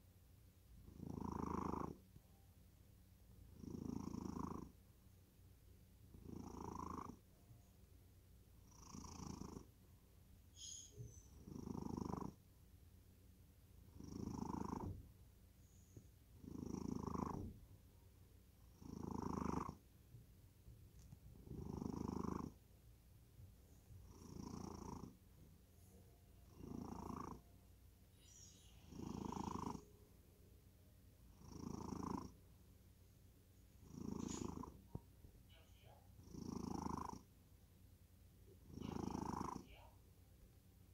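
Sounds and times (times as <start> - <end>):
cat snoring: 0.8 - 2.0, 3.4 - 4.8, 6.1 - 7.3, 8.6 - 9.8, 10.6 - 12.4, 13.9 - 15.0, 15.6 - 17.6, 18.6 - 19.8, 21.3 - 22.6, 23.7 - 25.2, 26.4 - 27.5, 28.2 - 30.0, 31.3 - 32.4, 33.8 - 35.0, 35.8 - 37.3, 38.6 - 39.9
quiet breathing: 33.7 - 36.7.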